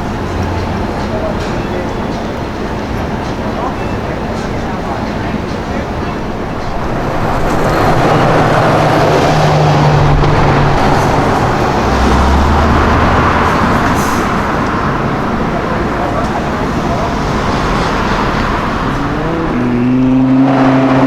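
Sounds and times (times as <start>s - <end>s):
traffic passing: 0.0s - 21.0s
car engine running: 6.2s - 21.0s.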